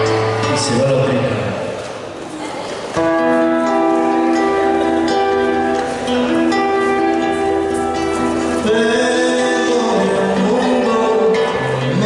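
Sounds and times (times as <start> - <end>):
guitar accompaniment: 0.0 - 12.0
melody of held notes: 3.0 - 12.0.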